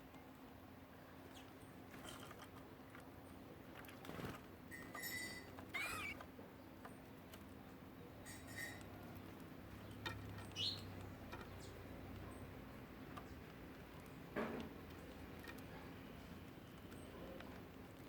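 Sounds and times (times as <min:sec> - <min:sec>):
faint ticks and patter: 0:00.0 - 0:18.0
bird short calls: 0:05.7 - 0:06.2.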